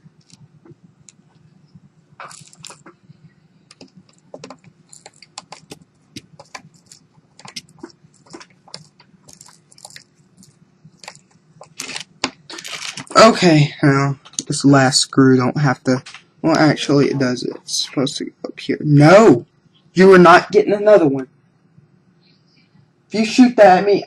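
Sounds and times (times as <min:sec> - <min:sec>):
screwdriver and small parts clicking: 0:04.4 - 0:05.8.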